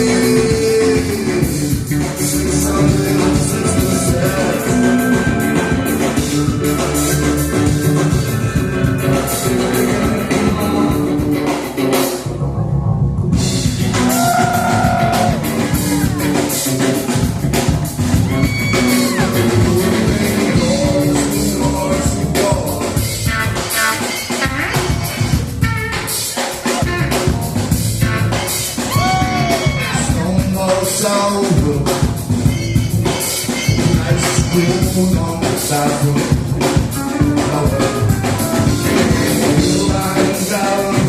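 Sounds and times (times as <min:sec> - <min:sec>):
person singing: 0:00.0 - 0:08.4, 0:09.1 - 0:11.8, 0:18.2 - 0:24.1, 0:33.0 - 0:41.0
drum kit: 0:00.0 - 0:12.5, 0:13.1 - 0:41.0
guitar: 0:00.0 - 0:41.0.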